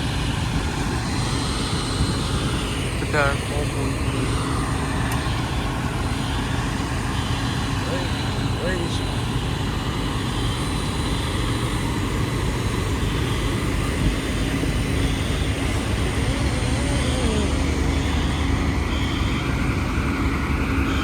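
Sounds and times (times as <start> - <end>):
diesel engines idling: 0.0 - 21.0.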